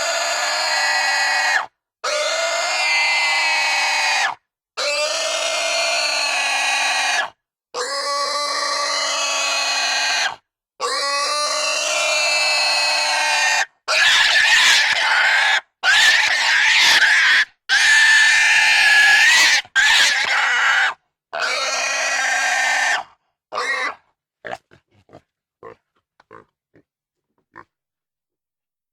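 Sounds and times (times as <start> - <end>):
pigs squealing: 0.0 - 24.6
faint pig grunts: 23.5 - 26.9.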